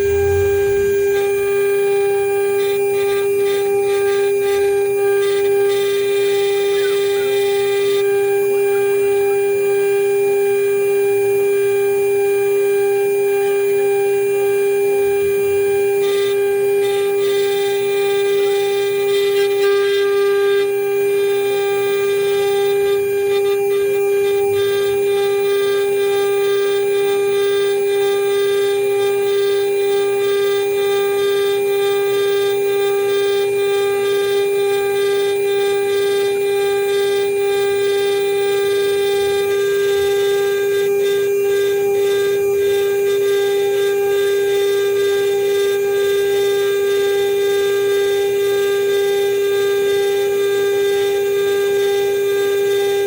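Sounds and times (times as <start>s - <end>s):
bit milling aluminum: 0.0s - 1.6s
cnc router spindle whining: 0.0s - 53.0s.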